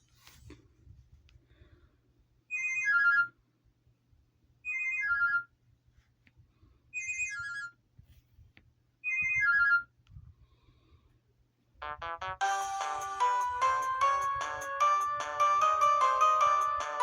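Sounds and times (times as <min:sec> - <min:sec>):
electronic ringtone phrase: 0:12.4 - 0:17.0.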